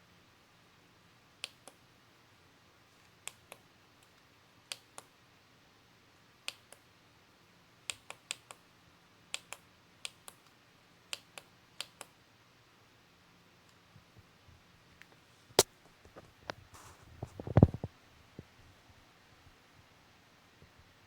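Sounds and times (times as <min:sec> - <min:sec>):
sharp small clicks in pairs: 0:01.4 - 0:01.8, 0:03.2 - 0:05.1, 0:06.4 - 0:06.9, 0:07.9 - 0:08.6, 0:09.3 - 0:12.2.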